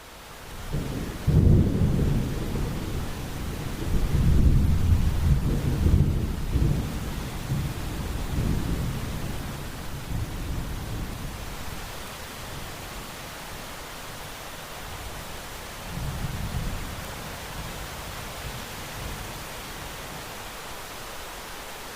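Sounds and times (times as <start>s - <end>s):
rain hiss: 0.0s - 21.9s
deep roll of thunder: 0.7s - 11.2s.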